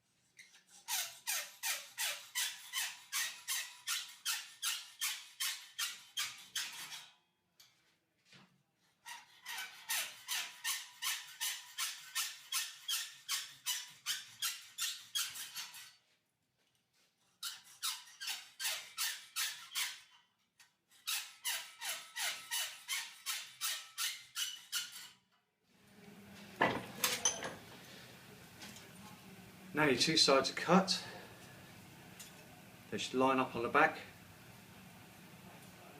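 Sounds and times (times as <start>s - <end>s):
hacksaw cutting metal: 0.4s - 7.1s, 9.1s - 16.0s, 17.4s - 20.2s, 21.0s - 25.2s.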